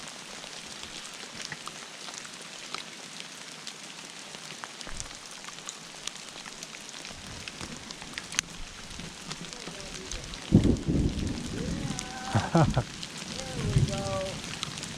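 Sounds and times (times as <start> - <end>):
hail falling: 0.0 - 14.9
hailstones ticking: 4.4 - 14.9.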